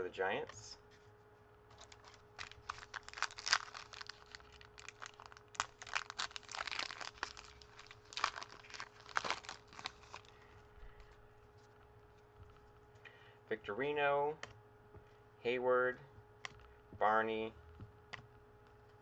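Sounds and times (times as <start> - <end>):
foil wrapper crinkling and tearing: 1.7 - 11.1.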